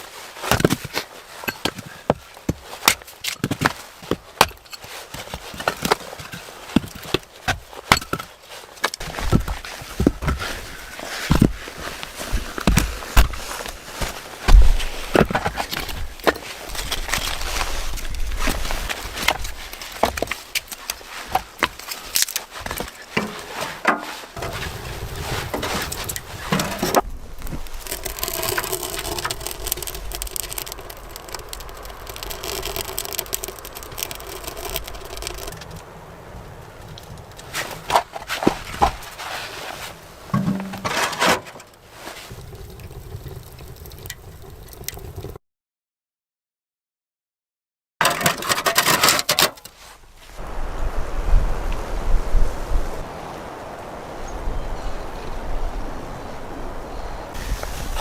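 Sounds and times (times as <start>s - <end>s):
wood knocking and scraping: 21.3s - 35.7s, 40.3s - 41.4s.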